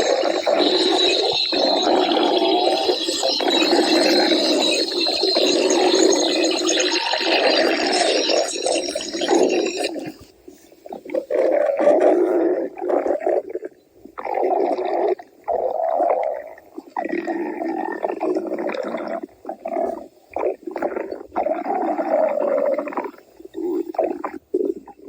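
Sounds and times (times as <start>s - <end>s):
cartoon stomach growling: 0.0s - 10.3s.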